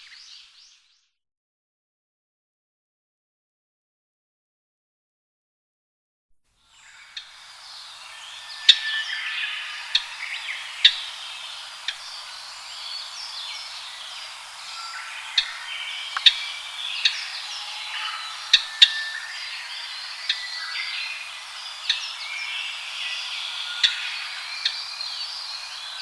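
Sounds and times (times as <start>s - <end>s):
birds whistling and chattering: 6.8s - 26.0s.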